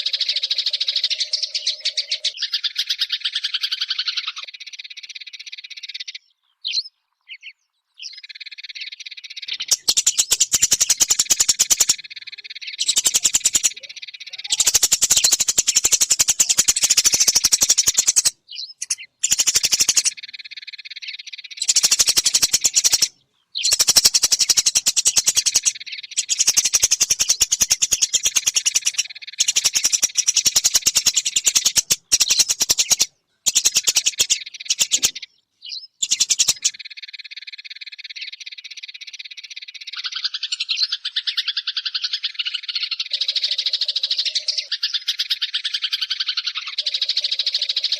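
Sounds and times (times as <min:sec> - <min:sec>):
sparrows chattering: 0:00.0 - 0:47.9.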